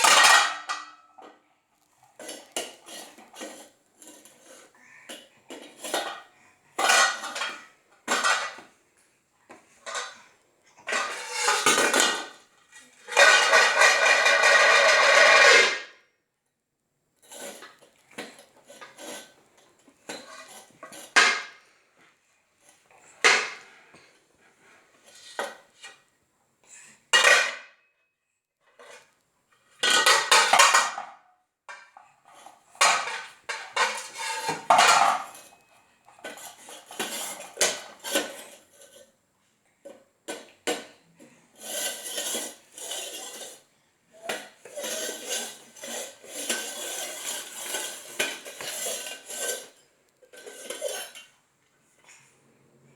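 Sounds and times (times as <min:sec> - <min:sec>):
hard objects clattering: 0:00.0 - 0:01.0, 0:13.0 - 0:15.8, 0:31.7 - 0:38.7.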